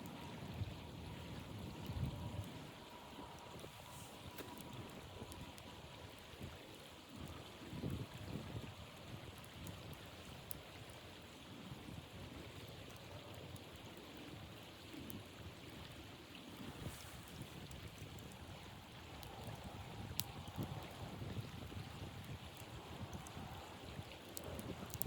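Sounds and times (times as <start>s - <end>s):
blizzard wind blowing: 16.6s - 17.7s
gusts buffeting microphone: 16.6s - 25.0s
faint ticks: 19.2s - 21.0s, 24.3s - 25.0s.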